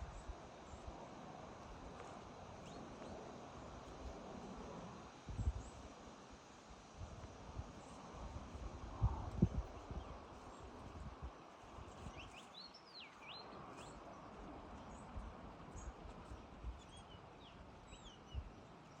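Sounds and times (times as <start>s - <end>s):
small bird singing: 11.9s - 15.1s, 15.7s - 19.0s.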